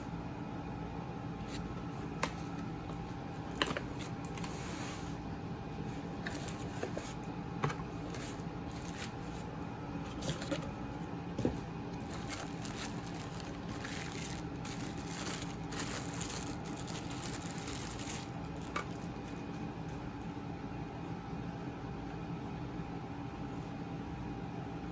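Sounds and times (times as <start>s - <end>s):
steady background hum: 0.0s - 24.9s
packaging rustling and scraping: 3.0s - 5.2s, 5.9s - 9.5s, 10.1s - 10.8s, 11.4s - 19.5s.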